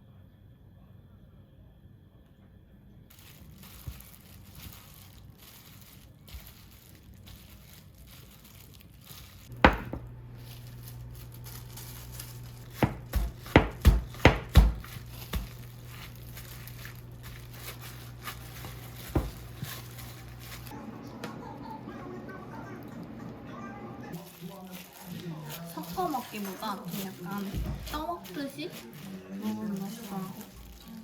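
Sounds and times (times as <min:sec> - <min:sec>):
steady low hum: 0:00.0 - 0:24.1
knife chopping on cutting board: 0:09.6 - 0:10.1, 0:12.7 - 0:15.6.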